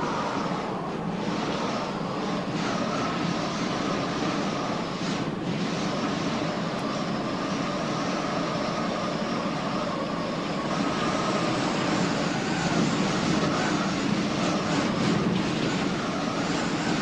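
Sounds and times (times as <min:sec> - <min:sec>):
wind blowing with whistling: 0:00.0 - 0:17.0.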